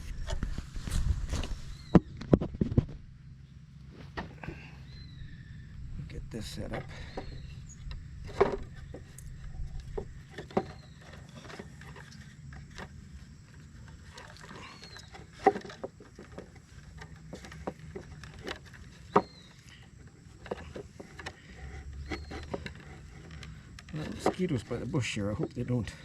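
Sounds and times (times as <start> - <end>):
low steady rumble: 0.0 - 26.0
knocks and rustles of handling: 6.3 - 26.0.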